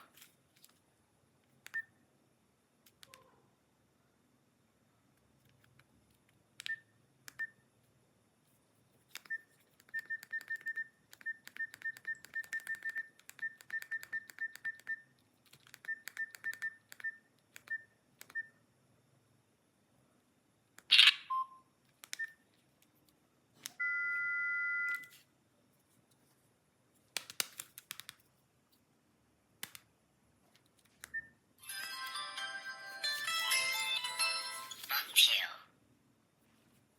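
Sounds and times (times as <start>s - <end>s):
keypad button clicks with beeps: 6.6s - 7.6s, 9.2s - 15.0s, 15.6s - 18.6s, 21.3s - 22.4s, 23.6s - 25.2s.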